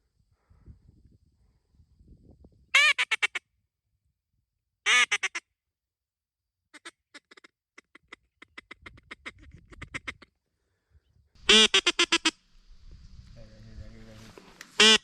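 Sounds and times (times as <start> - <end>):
duck quacking: 4.9 - 5.4, 6.8 - 10.3, 11.4 - 12.4, 14.8 - 15.0
low rumble: 12.6 - 14.3.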